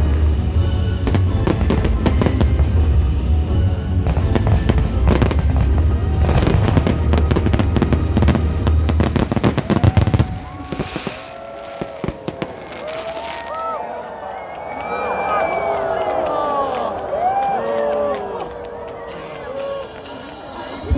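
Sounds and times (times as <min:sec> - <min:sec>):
music playing: 0:00.0 - 0:11.1, 0:17.9 - 0:20.9
fireworks bursting and crackling: 0:00.0 - 0:13.7.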